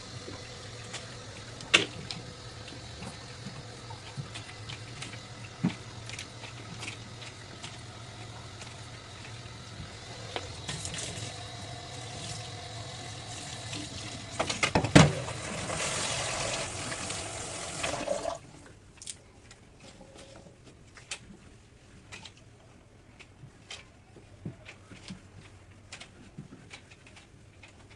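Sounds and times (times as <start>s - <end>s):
tap running water into sink: 0.0s - 18.4s.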